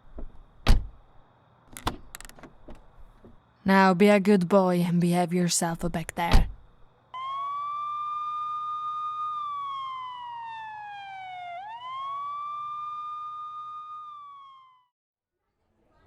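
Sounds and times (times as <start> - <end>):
police siren wailing: 7.2 - 14.9.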